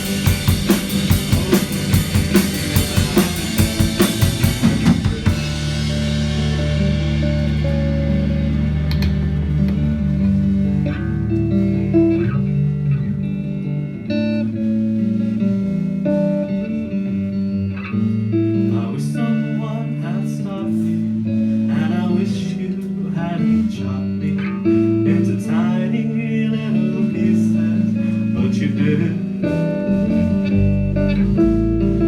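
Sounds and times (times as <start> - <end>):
deep low bass note: 0.0 - 14.0
bass guitar: 0.0 - 32.0
guitar: 0.0 - 32.0.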